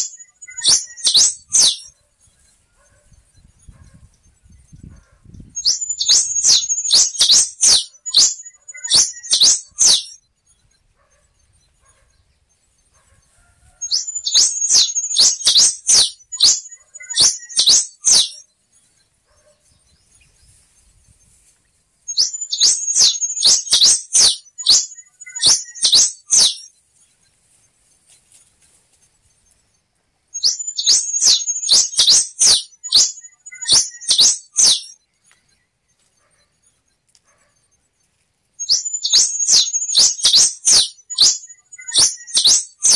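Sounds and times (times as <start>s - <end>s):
finch singing high sharp notes: 0.0s - 2.6s, 5.4s - 10.2s, 13.9s - 18.9s, 22.1s - 26.8s, 30.4s - 35.6s, 38.6s - 42.9s.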